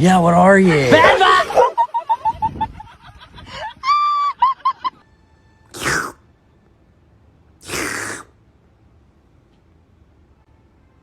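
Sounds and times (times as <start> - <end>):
breathy animal hisses: 5.8 - 6.2, 7.6 - 8.3.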